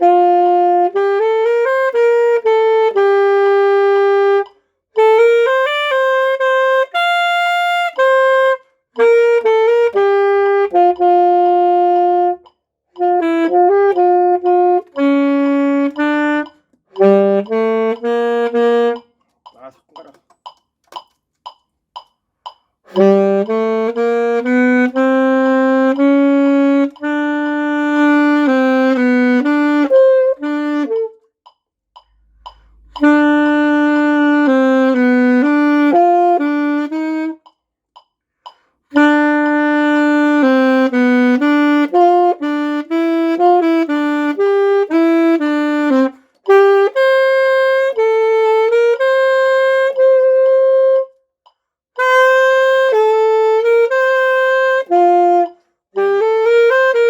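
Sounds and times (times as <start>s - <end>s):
alto saxophone melody: 0.0s - 19.8s, 22.8s - 31.4s, 32.0s - 37.6s, 38.4s - 57.0s
faint evenly spaced ticks: 0.0s - 57.0s.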